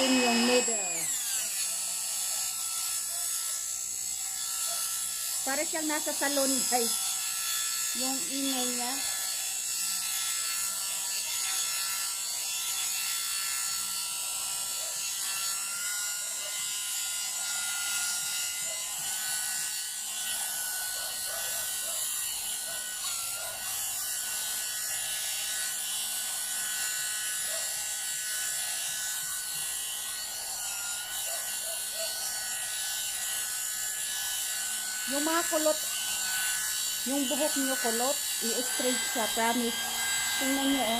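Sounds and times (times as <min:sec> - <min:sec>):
hair dryer motor whine: 0:00.0 - 0:40.9.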